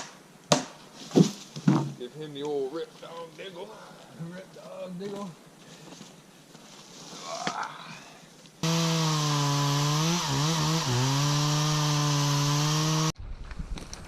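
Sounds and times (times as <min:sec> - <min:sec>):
chainsaw cutting log: 0:08.6 - 0:13.2.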